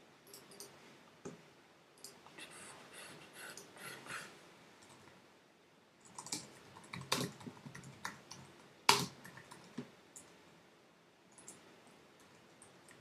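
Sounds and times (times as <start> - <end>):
keyboard typing: 6.0 - 10.3, 11.4 - 13.0.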